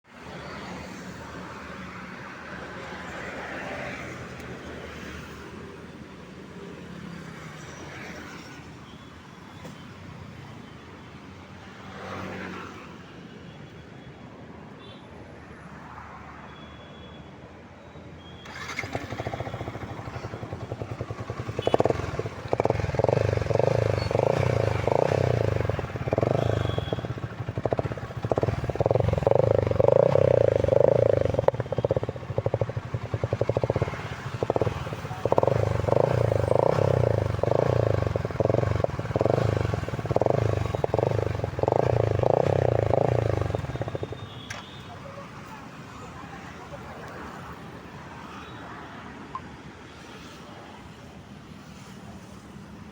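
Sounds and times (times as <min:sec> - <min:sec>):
motorcycle engine throttle blips: 0:18.4 - 0:44.7.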